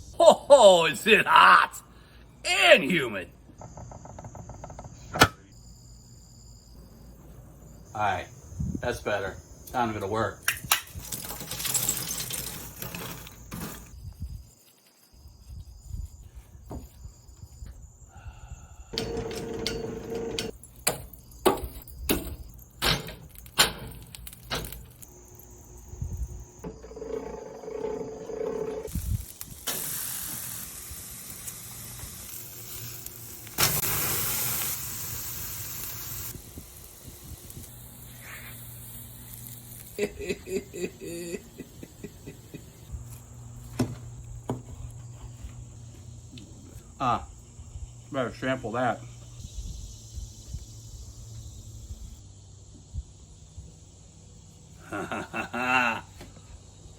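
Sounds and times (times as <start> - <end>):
steaks sizzling on a grill: 28.9 - 40.6.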